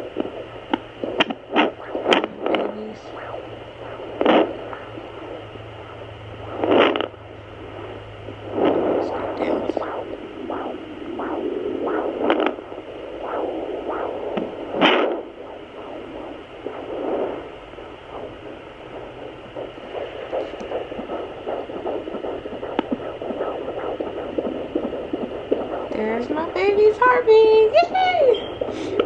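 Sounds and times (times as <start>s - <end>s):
fetal heartbeat pulsing: 0.0s - 29.0s
loud crackle: 3.4s - 5.4s, 6.5s - 7.1s, 10.7s - 26.1s.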